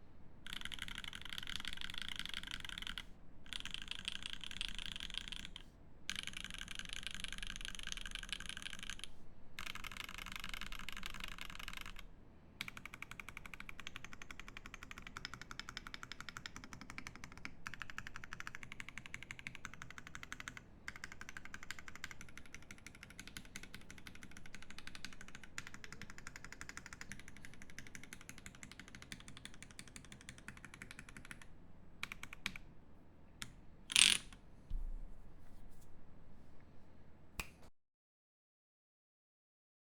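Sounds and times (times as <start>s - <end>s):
mechanical keyboard typing: 0.4s - 12.0s, 12.6s - 32.6s.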